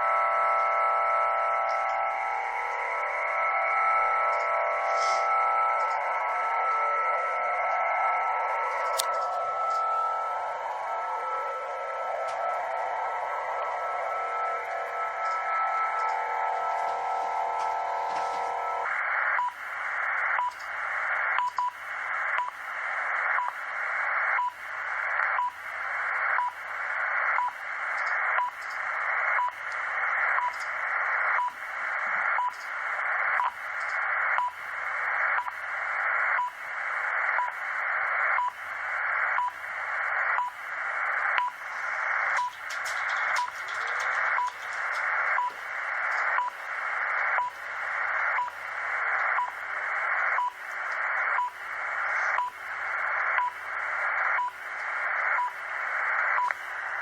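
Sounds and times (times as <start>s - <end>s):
time signal ticks: 0.0s - 11.0s, 12.2s - 56.8s.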